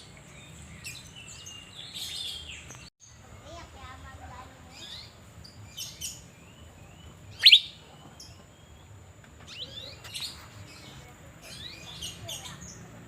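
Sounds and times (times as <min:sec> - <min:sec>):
bird chirps and whistled notes: 0:05.8 - 0:08.8.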